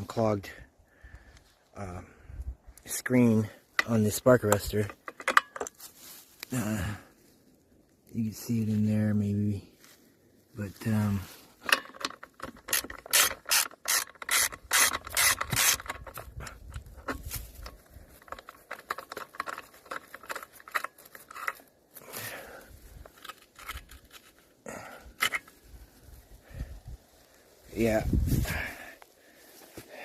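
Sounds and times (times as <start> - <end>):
hand tools clicking on metal: 11.6 - 21.6
tool scraping: 11.7 - 21.7.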